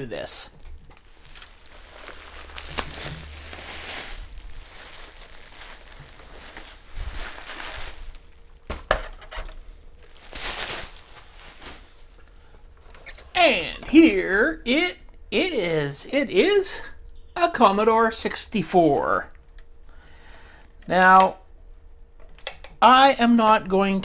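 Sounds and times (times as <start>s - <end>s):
packing material rustling: 0.0s - 13.8s.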